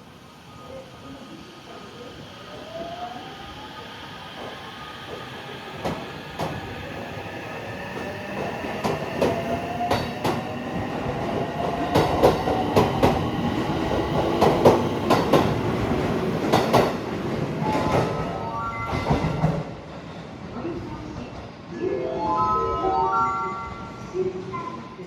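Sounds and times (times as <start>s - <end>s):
train passing: 0.0s - 25.0s
train whine rising in pitch: 0.1s - 14.1s.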